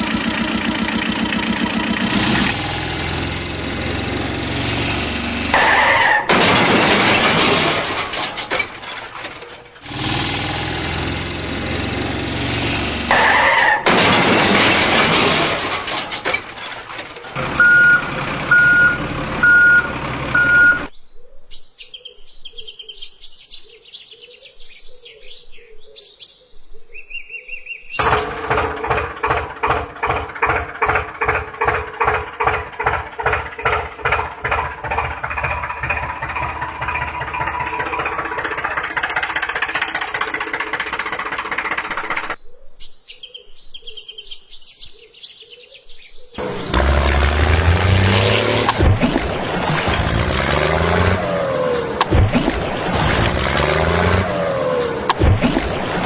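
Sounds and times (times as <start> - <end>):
engine idling with knocking pulse: 0.0 - 20.9, 28.0 - 42.4, 46.4 - 56.0
short reversing alarm beeps: 17.6 - 20.9.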